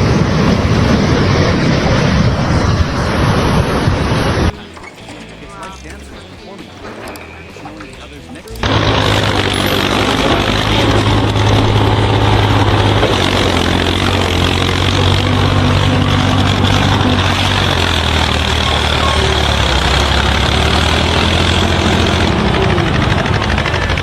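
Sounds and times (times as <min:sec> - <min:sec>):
heavy machine engine running: 0:00.0 - 0:24.0.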